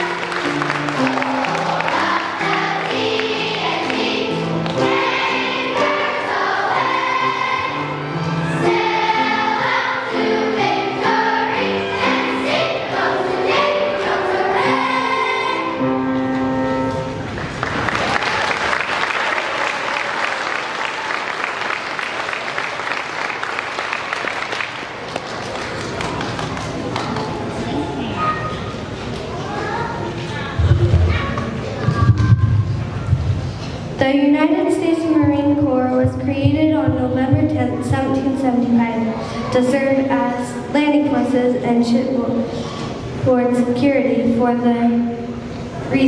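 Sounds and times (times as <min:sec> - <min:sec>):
audience applause: 0:00.0 - 0:04.1, 0:17.3 - 0:27.8
children's choir singing: 0:00.0 - 0:17.2.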